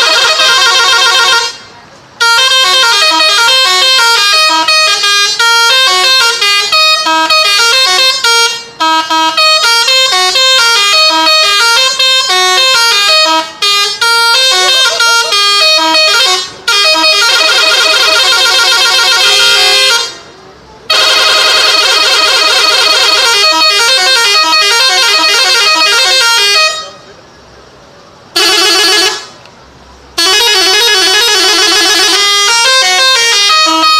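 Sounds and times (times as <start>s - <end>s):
fast warbling horn trill: 0.0s - 1.6s, 2.2s - 20.2s, 20.9s - 27.0s, 30.2s - 33.9s
bus air horn melody: 0.0s - 20.3s, 20.9s - 27.1s, 28.3s - 29.4s, 30.2s - 33.9s.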